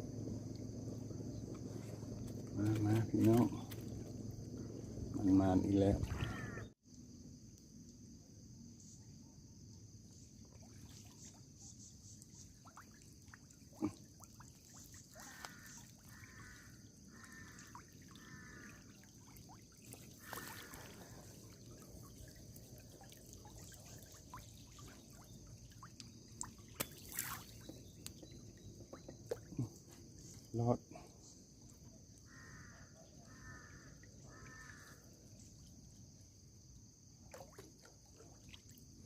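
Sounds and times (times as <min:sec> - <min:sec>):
high insect drone: 0:00.0 - 0:37.2
water trickling and dripping: 0:10.1 - 0:30.4.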